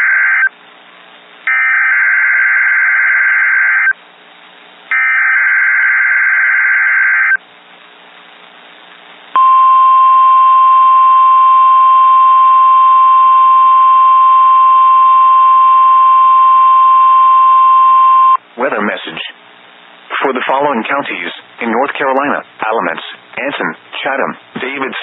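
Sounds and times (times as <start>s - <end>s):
steady attention tone: 9.4s - 18.4s.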